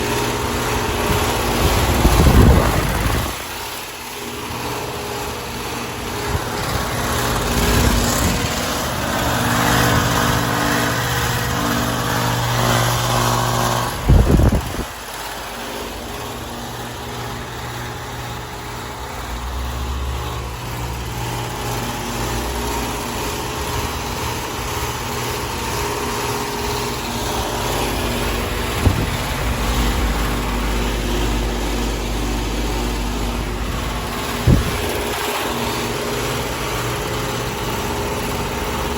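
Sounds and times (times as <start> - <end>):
compressor hum: 0.0 - 38.9
condenser fan noise: 0.0 - 38.9
low rumbling surges: 1.0 - 3.7.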